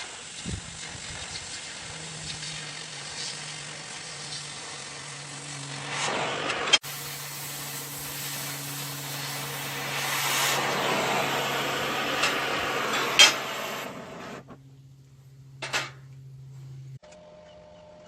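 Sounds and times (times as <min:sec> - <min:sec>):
welder arc sizzling and crackling: 0:00.0 - 0:14.6
low hum: 0:05.0 - 0:17.8.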